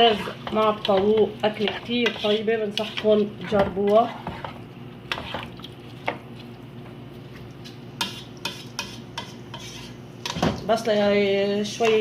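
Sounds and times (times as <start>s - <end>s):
spoon scraping a pot: 0.0s - 5.5s, 8.0s - 10.4s
low sizzle: 0.0s - 12.0s.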